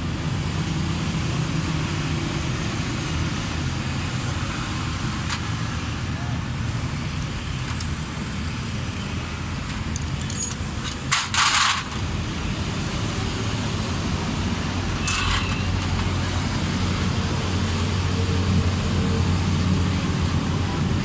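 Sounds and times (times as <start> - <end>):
road traffic rumble: 0.0 - 21.0.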